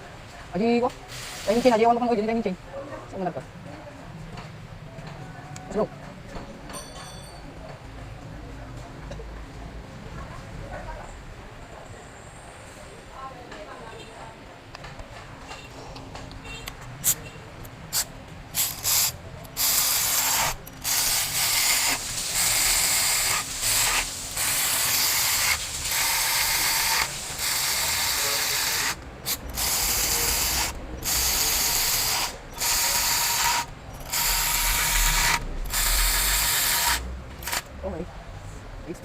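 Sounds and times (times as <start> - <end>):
ratchet wrench clicking: 17.9 - 37.7.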